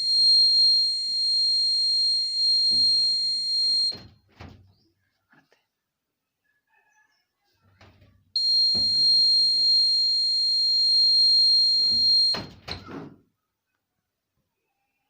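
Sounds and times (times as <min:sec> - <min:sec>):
high-pitched alarm buzzer: 0:00.0 - 0:04.0, 0:08.4 - 0:12.6.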